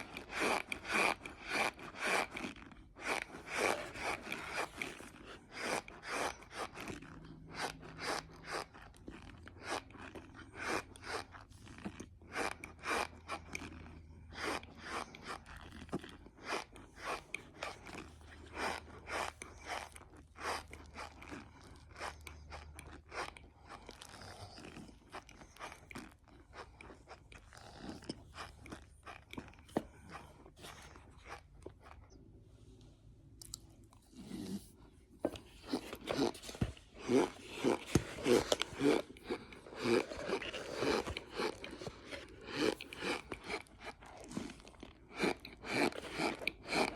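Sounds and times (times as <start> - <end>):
squeaky crunchy chewing: 0.0 - 46.9.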